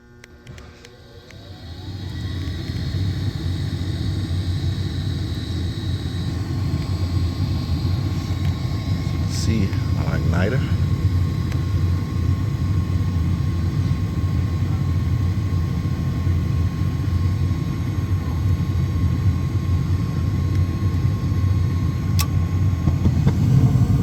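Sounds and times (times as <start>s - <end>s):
furnace fan motor humming: 0.0s - 24.0s
sharp click: 22.2s - 22.4s.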